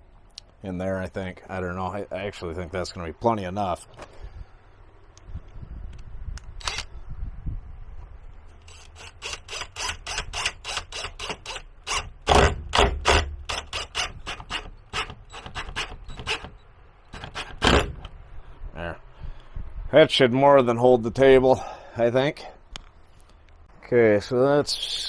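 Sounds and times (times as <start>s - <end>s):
tool clicking while driving screws: 6.4s - 6.9s, 8.5s - 18.2s.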